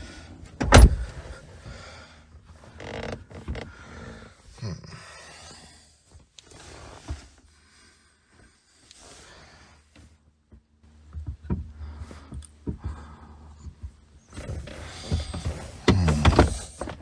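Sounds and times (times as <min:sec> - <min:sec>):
seat rustling and creaking: 0:00.4 - 0:01.4, 0:02.5 - 0:03.8, 0:14.3 - 0:17.0.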